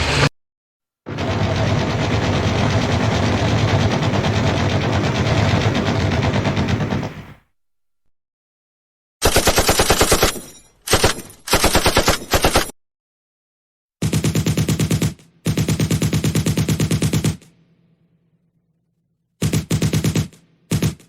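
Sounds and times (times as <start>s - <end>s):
machine gun firing: 1.1s - 7.4s, 9.2s - 12.8s, 14.0s - 17.6s, 19.4s - 21.0s.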